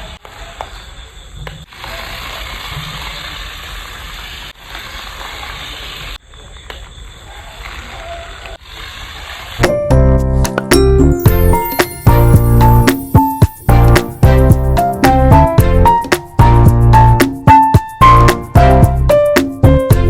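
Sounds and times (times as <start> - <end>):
toy truck electric motor whirring: 1.7 - 6.2, 8.5 - 9.6.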